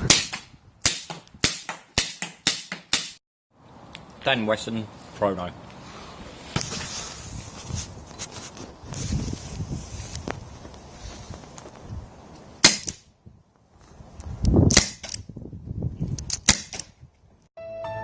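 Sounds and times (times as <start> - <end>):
airsoft revolver shots: 0.0 - 3.2, 12.6 - 13.0, 14.7 - 15.2, 16.4 - 16.9.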